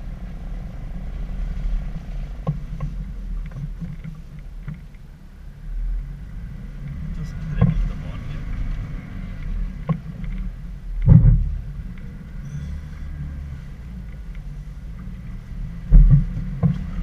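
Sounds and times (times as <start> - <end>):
car engine running low: 0.0 - 17.0
car body knocking over rough ground: 9.8 - 11.7, 15.8 - 17.0.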